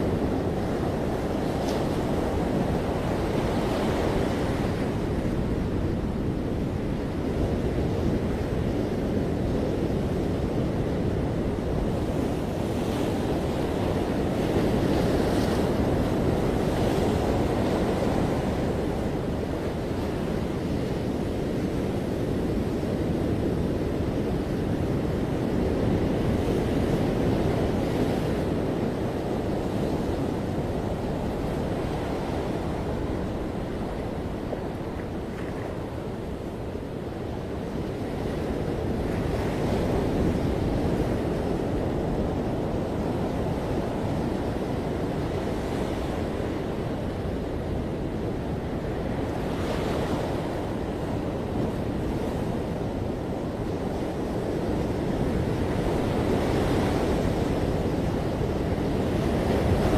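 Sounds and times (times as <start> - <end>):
wind buffeting microphone: 0.0 - 59.9
ocean surf breaking: 26.6 - 59.9.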